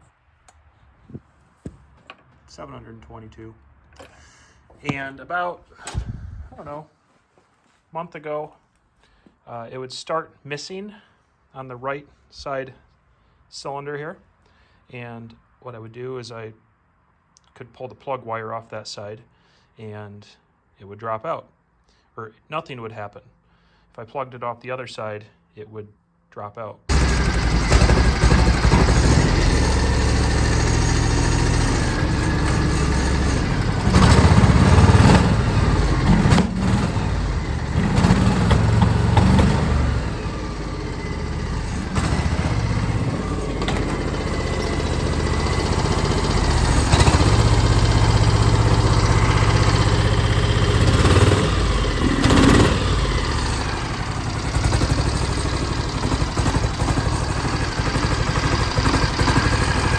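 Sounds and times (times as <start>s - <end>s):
lawn tractor engine misfiring: 4.0s - 6.4s, 26.9s - 59.9s.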